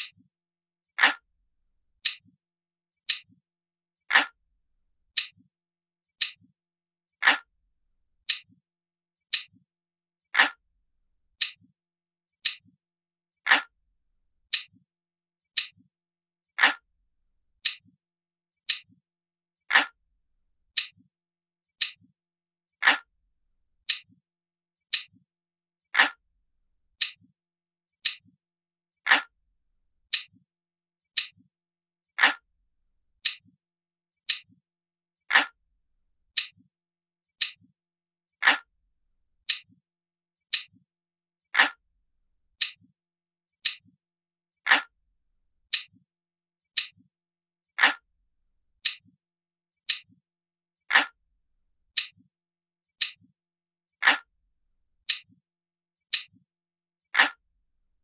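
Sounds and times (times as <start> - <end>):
clock ticking: 0.0 - 0.3.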